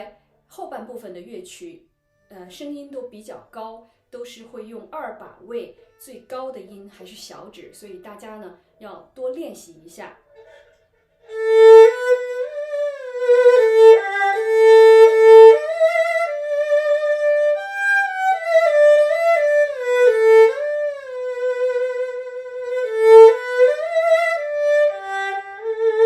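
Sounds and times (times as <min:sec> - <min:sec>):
erhu playing slow melody: 0:11.3 - 0:26.0.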